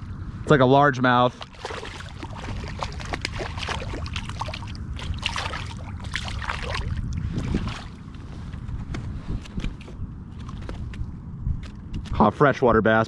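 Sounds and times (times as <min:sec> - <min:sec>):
steady low rumble: 0:00.0 - 0:13.0
water trickling and splashing: 0:01.3 - 0:08.2.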